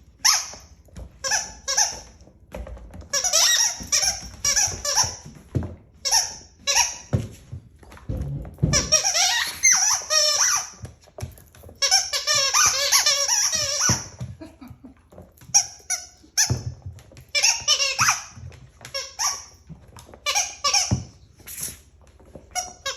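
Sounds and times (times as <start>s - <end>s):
dog squeaking: 0.2s - 2.2s, 3.1s - 5.4s, 8.7s - 10.8s, 11.8s - 14.2s, 15.5s - 19.6s.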